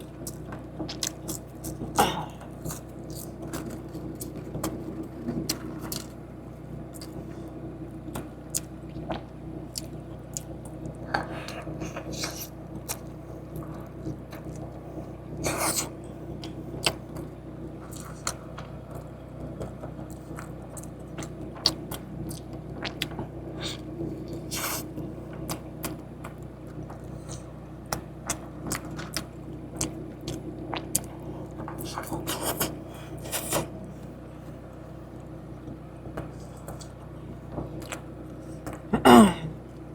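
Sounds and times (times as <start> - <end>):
steady low hum: 0.0 - 39.9
chewing: 0.1 - 4.8, 6.9 - 7.5, 8.1 - 34.1, 35.1 - 39.0.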